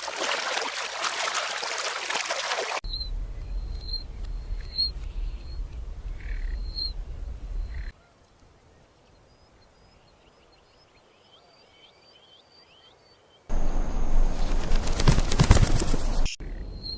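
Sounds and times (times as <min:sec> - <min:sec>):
wind rumbling on microphone: 0:02.8 - 0:07.9.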